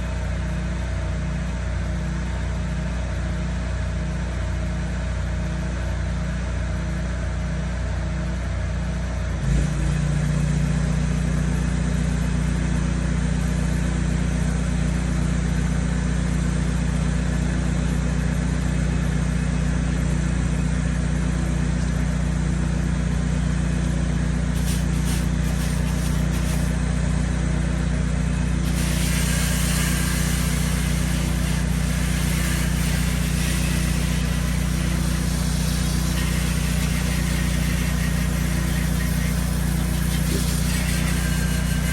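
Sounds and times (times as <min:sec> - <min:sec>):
pressure washer engine running: 0:22.2 - 0:41.9
steady hiss: 0:24.6 - 0:26.8, 0:28.6 - 0:41.9.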